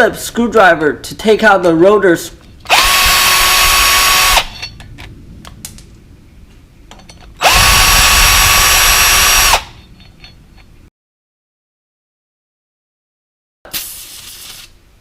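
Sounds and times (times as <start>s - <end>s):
electric drill whining: 2.7s - 4.6s, 7.4s - 9.8s.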